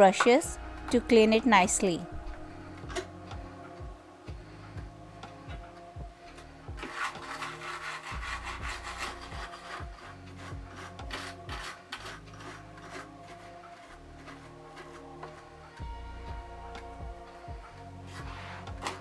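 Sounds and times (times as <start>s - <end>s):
soft ambient background music: 0.0s - 19.0s
brushes scrubbing sewing machine: 6.8s - 15.5s.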